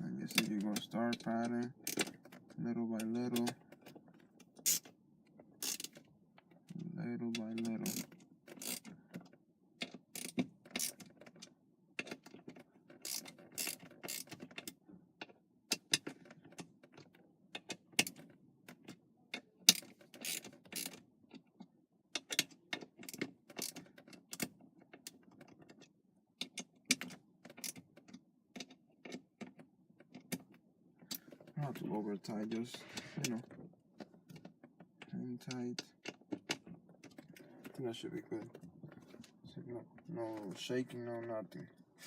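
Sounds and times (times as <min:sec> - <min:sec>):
ratchet clicking: 0:05.6 - 0:06.0, 0:07.8 - 0:08.9, 0:13.0 - 0:14.3, 0:19.7 - 0:21.0, 0:23.1 - 0:23.8.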